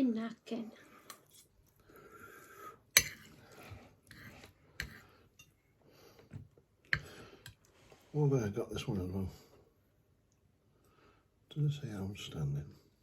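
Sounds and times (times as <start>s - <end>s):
breathing: 0.7s - 8.1s, 10.7s - 11.4s.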